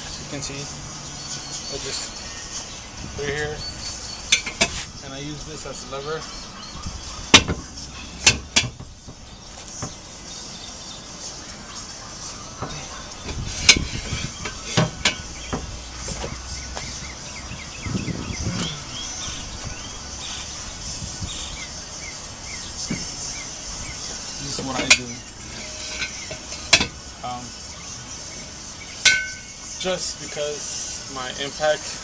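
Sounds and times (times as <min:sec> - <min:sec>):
birds chirping: 0:00.0 - 0:32.0
metal hand tools clanking: 0:24.4 - 0:27.0, 0:29.0 - 0:29.5.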